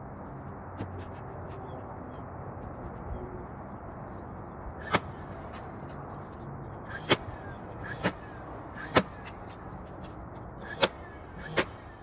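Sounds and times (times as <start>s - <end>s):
pneumatic nail gun firing: 6.9s - 9.3s, 10.6s - 11.9s.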